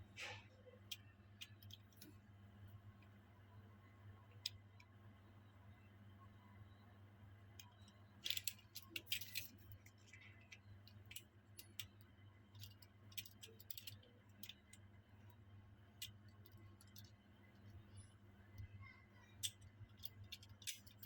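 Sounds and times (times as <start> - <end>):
faint low hum: 0.0 - 21.0
toy cars and packaging clicking: 0.2 - 2.2, 7.6 - 14.9, 16.0 - 21.0.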